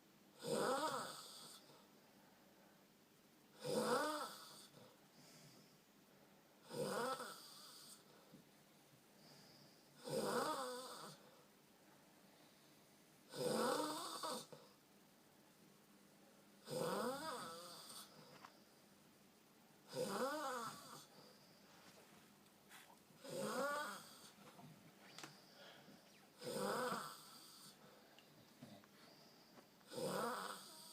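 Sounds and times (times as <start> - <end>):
person snoring: 0.4 - 1.6, 3.6 - 4.7, 6.6 - 8.0, 10.0 - 11.2, 13.3 - 14.6, 16.6 - 18.1, 19.9 - 21.2, 23.2 - 24.3, 26.4 - 27.8, 29.9 - 30.9.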